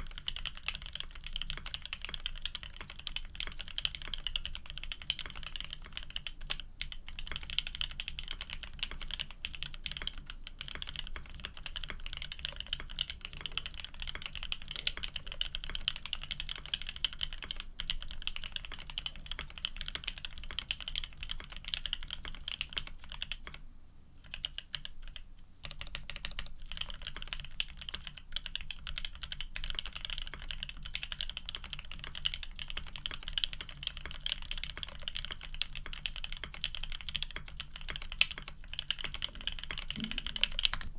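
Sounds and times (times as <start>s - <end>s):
mechanical keyboard typing: 0.0s - 23.6s, 24.2s - 40.9s.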